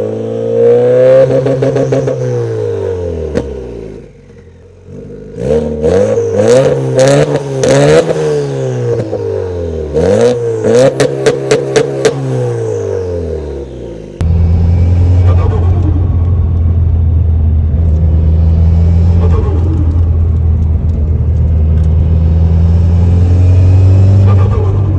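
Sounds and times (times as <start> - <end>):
car engine revving: 0.0 - 24.9
low engine drone: 6.0 - 24.9.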